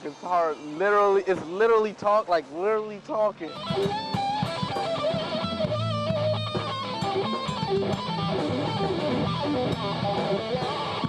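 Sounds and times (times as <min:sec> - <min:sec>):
electric guitar bluesy lead: 0:03.4 - 0:11.0
low bass line: 0:03.5 - 0:11.0.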